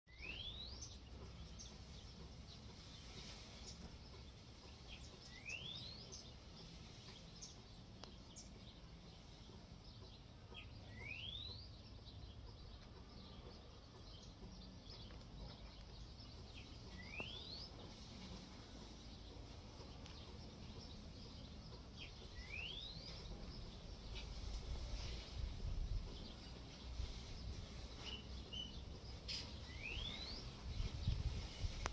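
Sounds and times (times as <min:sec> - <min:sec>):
low steady rumble: 0:00.2 - 0:31.9
bird's rising whistled call: 0:29.7 - 0:30.5.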